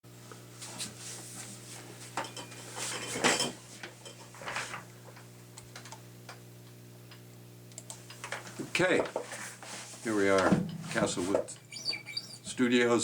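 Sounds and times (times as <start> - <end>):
steady low hum: 0.9 - 13.0.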